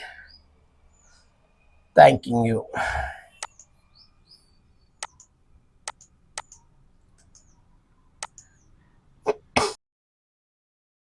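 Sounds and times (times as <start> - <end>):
sharp clicks: 3.3 - 3.8, 5.0 - 5.3, 5.9 - 7.6, 8.2 - 8.5.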